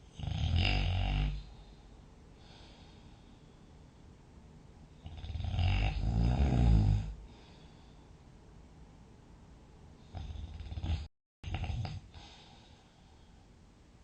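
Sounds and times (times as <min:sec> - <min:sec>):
person snoring: 0:00.1 - 0:01.5, 0:05.0 - 0:07.2, 0:10.1 - 0:12.3
soft breath: 0:01.4 - 0:04.2, 0:07.2 - 0:08.4, 0:12.1 - 0:13.6.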